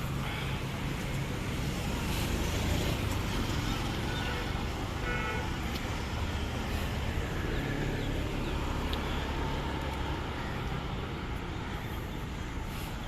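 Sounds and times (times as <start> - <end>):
road traffic rumble: 0.0 - 13.0.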